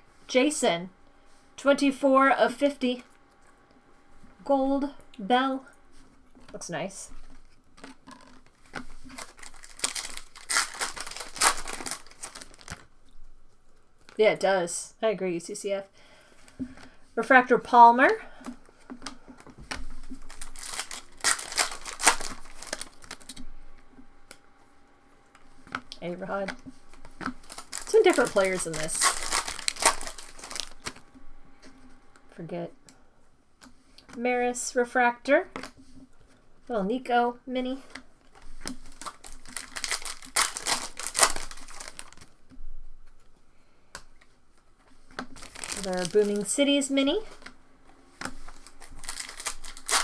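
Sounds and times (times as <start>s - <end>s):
card packaging rustling and crinkling: 6.0s - 14.2s, 17.8s - 23.5s, 25.4s - 31.1s, 37.8s - 43.3s, 44.3s - 50.0s.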